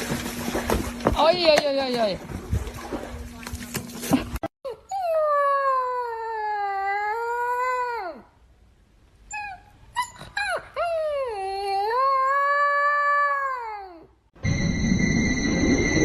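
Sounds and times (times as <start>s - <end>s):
loud noise with high tones: 14.4s - 16.0s.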